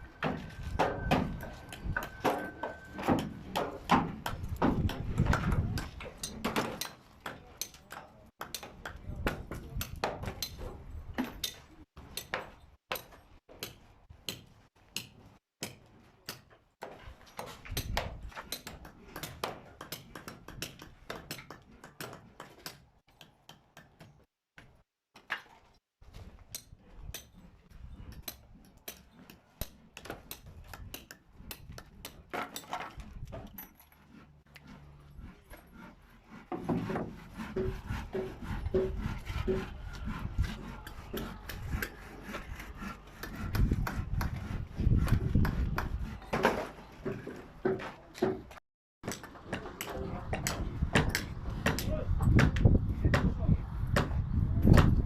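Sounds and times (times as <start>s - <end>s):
continuous rasping: 25.7s - 55.0s.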